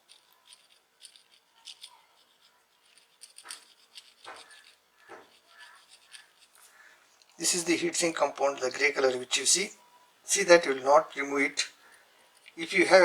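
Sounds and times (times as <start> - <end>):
small phone parts clicking: 0.0 - 7.4, 11.9 - 12.6.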